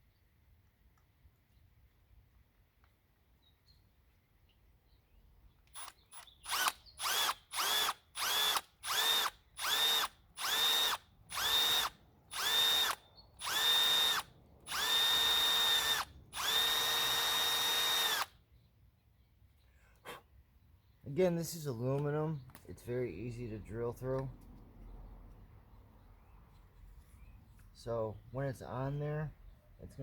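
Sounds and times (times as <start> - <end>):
electric drill whining: 5.7 - 18.4.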